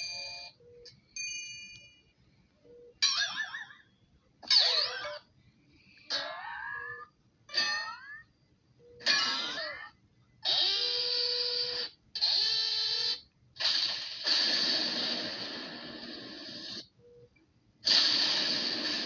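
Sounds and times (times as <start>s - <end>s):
cartoon sound effects: 4.4s - 5.2s, 6.1s - 8.3s, 9.0s - 14.7s.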